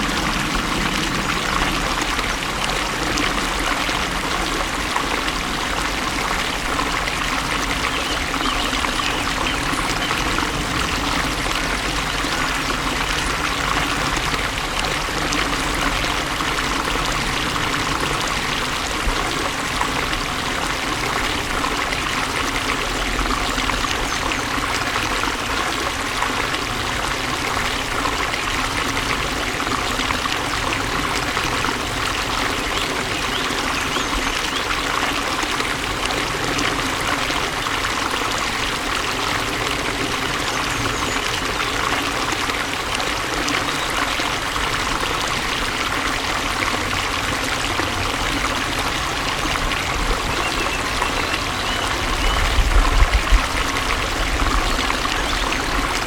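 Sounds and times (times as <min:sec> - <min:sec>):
low rumble: 0:00.0 - 0:04.9
flowing water rushing: 0:00.0 - 0:56.0.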